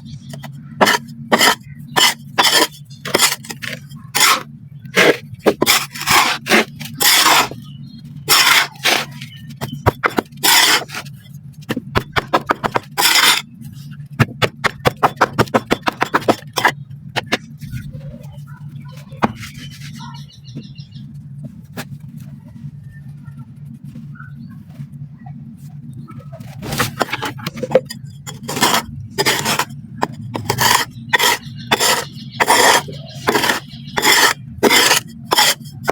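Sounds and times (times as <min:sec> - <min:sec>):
gritty sand scraping: 0:00.0 - 0:18.4, 0:26.4 - 0:35.9
steady low hum: 0:00.0 - 0:35.9.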